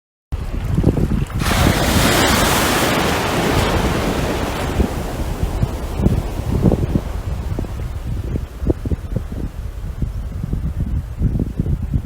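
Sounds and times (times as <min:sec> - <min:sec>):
wind rumble on microphone: 0:00.3 - 0:12.0
ocean wave breaking: 0:01.2 - 0:10.4.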